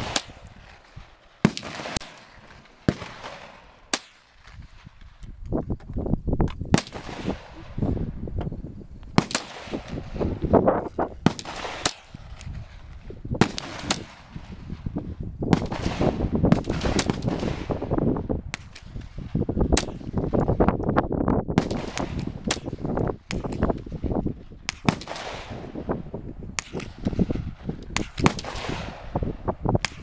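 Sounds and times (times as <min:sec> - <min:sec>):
gunshots echoing: 0:00.0 - 0:04.5, 0:06.7 - 0:08.0, 0:09.2 - 0:10.3, 0:11.2 - 0:12.8, 0:13.4 - 0:14.9, 0:15.5 - 0:20.2, 0:21.6 - 0:24.0, 0:24.7 - 0:26.0, 0:26.6 - 0:30.0.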